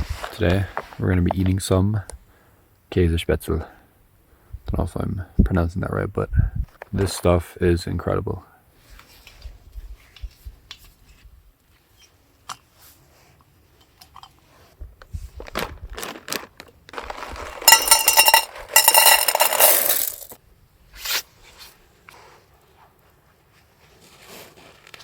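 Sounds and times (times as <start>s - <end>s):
pot and utensils clinking: 17.5s - 20.3s.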